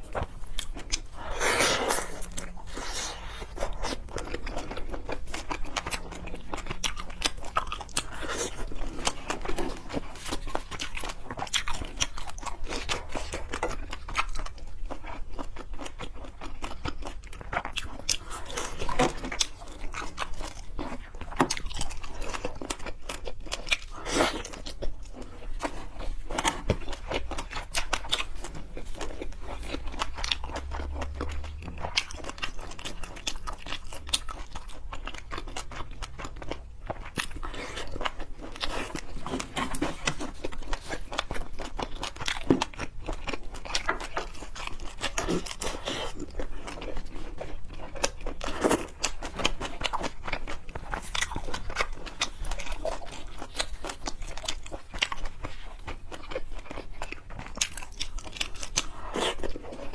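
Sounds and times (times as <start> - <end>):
chewing and crunching seafood: 0.0 - 59.9.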